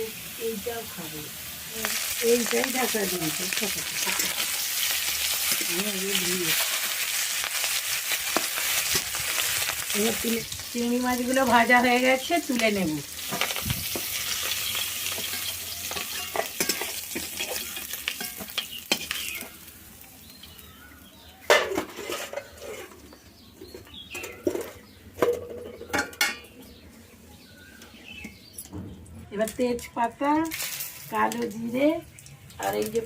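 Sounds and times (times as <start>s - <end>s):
prawns sizzling in hot oil: 0.0s - 22.6s, 30.0s - 33.0s.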